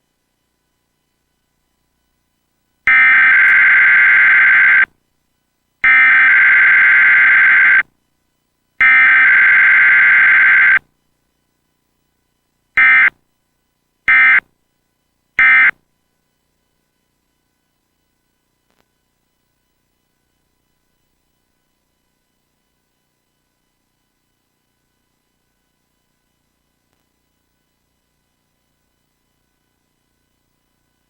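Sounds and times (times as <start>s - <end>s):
digital data bursts: 2.9s - 4.9s, 5.8s - 7.8s, 8.8s - 10.8s, 12.8s - 13.1s, 14.1s - 14.4s, 15.4s - 15.7s.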